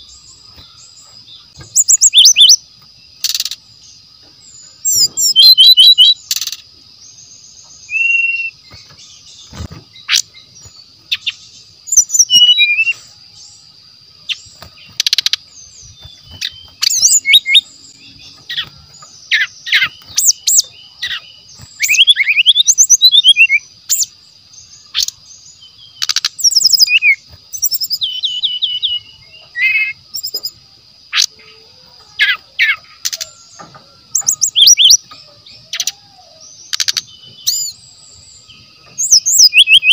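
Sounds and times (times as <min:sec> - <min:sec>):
bird singing whistled phrases: 0:01.7 - 0:02.6, 0:04.9 - 0:06.5, 0:07.8 - 0:08.9, 0:11.2 - 0:13.1, 0:15.0 - 0:24.1, 0:26.0 - 0:30.6, 0:32.2 - 0:37.8, 0:38.4 - 0:39.9.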